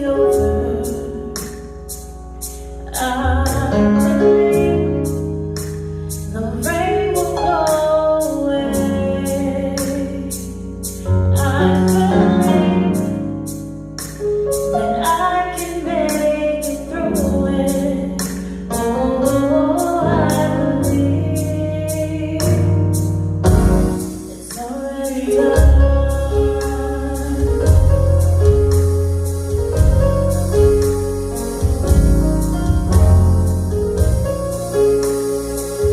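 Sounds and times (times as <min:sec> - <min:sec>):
instrumental accompaniment: 0:00.0 - 0:35.9
person singing worship song: 0:24.2 - 0:28.5.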